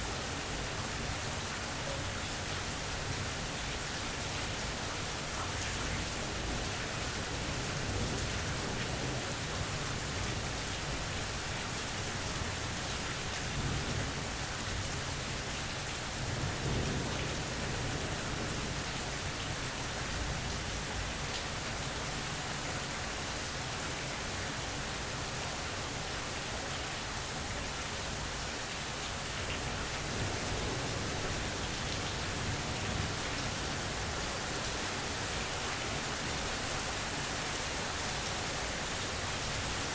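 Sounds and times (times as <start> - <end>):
steady rain falling: 0.0 - 39.9
low thunder rumbles: 29.7 - 34.2.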